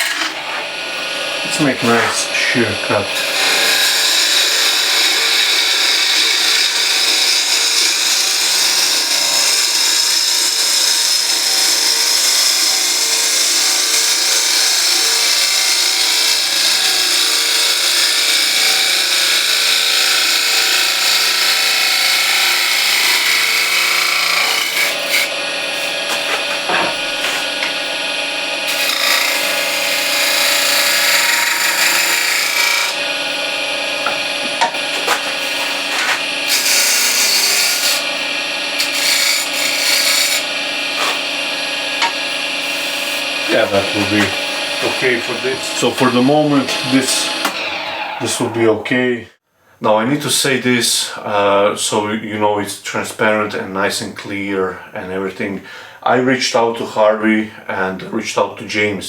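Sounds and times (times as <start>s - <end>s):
lathe tool hissing on wood: 0.0s - 27.7s, 28.7s - 33.0s, 34.8s - 48.9s.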